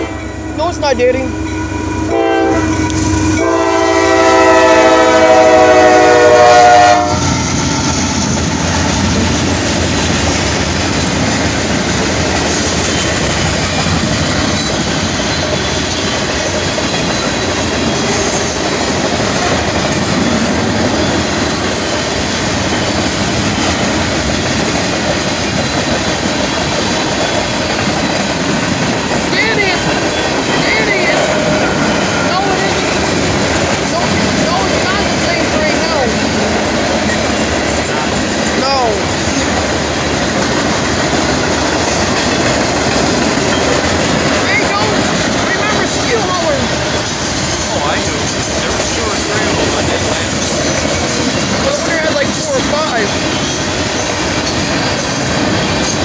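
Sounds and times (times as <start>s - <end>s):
train wheels rolling on rails: 0.0s - 56.0s
locomotive air horn: 1.6s - 7.4s.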